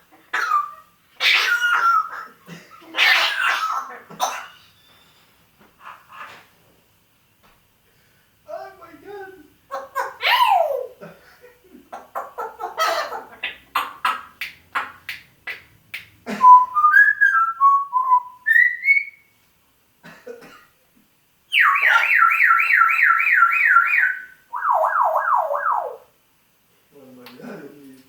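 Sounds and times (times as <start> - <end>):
parrot whistling: 0.4 - 2.3, 16.4 - 19.3, 21.5 - 26.1
parrot imitating car alarm: 21.5 - 26.1.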